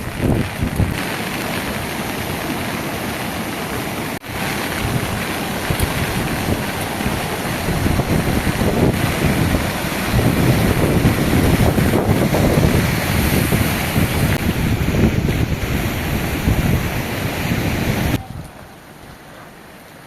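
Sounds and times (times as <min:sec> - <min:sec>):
wind buffeting microphone: 0:00.0 - 0:01.1, 0:04.2 - 0:18.5
heavy rain: 0:00.0 - 0:20.0.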